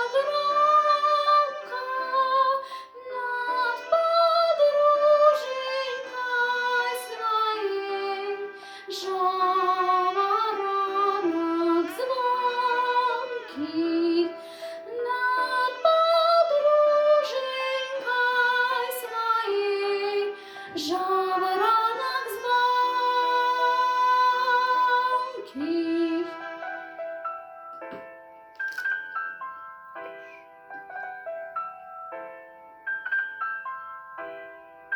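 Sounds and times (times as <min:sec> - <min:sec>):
young person singing: 0:00.0 - 0:26.6
instrumental accompaniment: 0:00.0 - 0:34.9.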